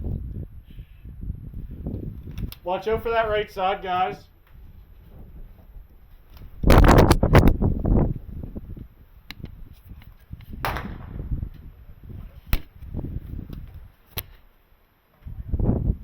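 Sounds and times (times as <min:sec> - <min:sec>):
airsoft gun shots snapping: 0:10.6 - 0:11.2, 0:12.5 - 0:12.7.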